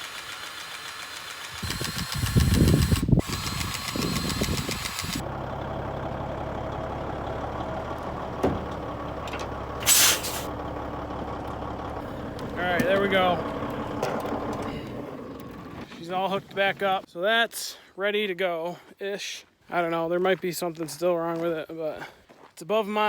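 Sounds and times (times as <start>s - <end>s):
diesel engine starting and idling: 0.0s - 16.8s
air hiss: 9.8s - 10.5s.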